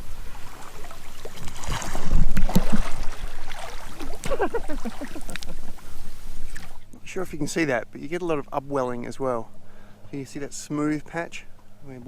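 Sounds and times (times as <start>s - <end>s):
water splashing and gurgling: 0.0s - 6.9s
bubbly clicks and sloshes: 0.5s - 5.6s.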